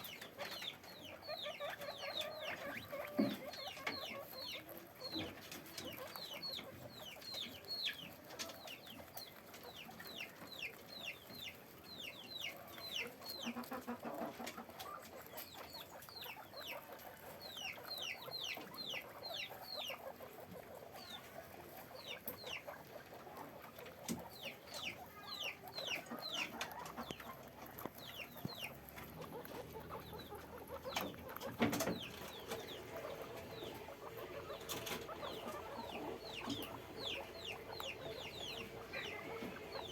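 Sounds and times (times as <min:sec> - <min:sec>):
guinea pigs squeaking: 0:00.0 - 0:39.9
low chattering: 0:23.2 - 0:39.9
rustling: 0:26.0 - 0:39.9.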